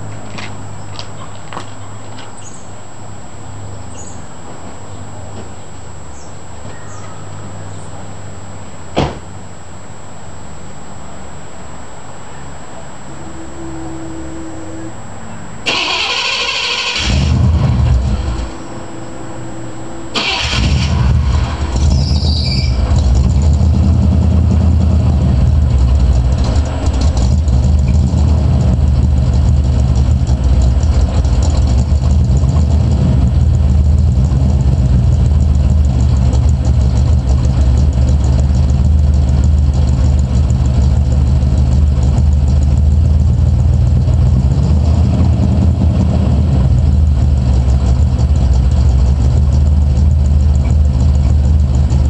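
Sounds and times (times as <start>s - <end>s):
car engine idling: 0.0s - 52.0s
engine knocking: 22.7s - 52.0s.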